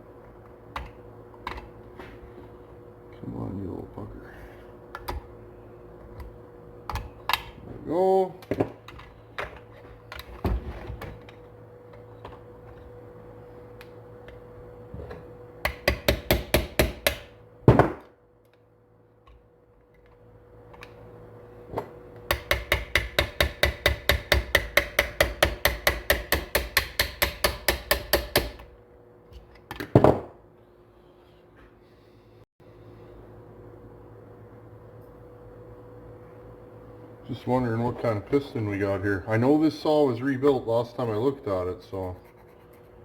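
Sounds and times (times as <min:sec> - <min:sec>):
hammer tapping on metal: 0:22.3 - 0:28.6.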